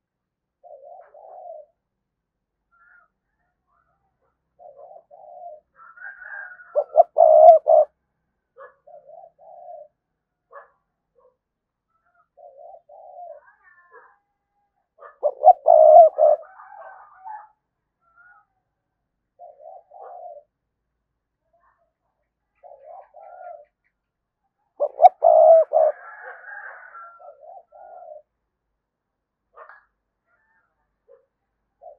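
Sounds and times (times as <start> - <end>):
dove cooing: 0.6 - 1.8, 4.6 - 8.0, 8.6 - 10.7, 12.0 - 13.8, 15.0 - 17.6, 19.4 - 20.6, 22.5 - 23.8, 24.7 - 28.3.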